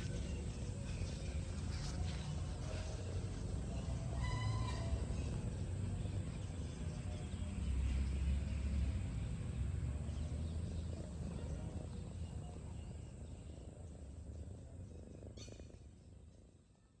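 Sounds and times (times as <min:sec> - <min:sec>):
faint bird chirps: 0:10.1 - 0:17.0.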